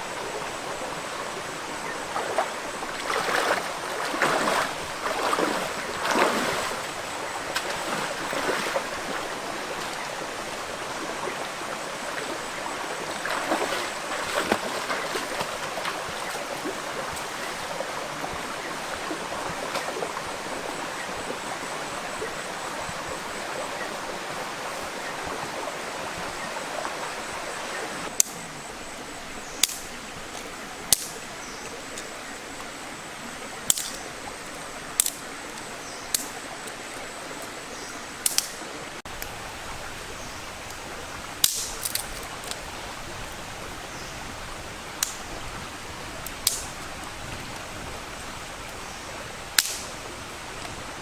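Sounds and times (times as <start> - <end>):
rushing water: 0.0 - 51.0
sharp cracks: 38.2 - 38.6, 41.4 - 42.6, 46.4 - 46.8, 49.6 - 50.0.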